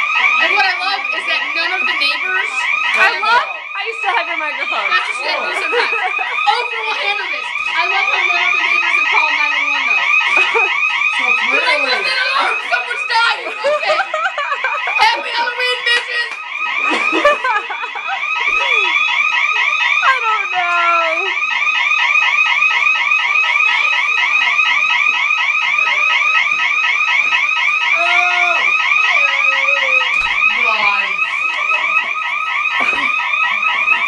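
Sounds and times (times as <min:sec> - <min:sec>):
voices: 0:00.0 - 0:34.0
warbling alarm tone: 0:00.0 - 0:34.0.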